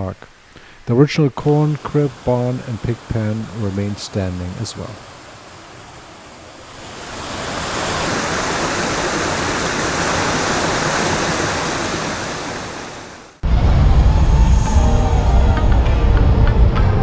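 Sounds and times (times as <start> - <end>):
rushing water: 0.3 - 13.4.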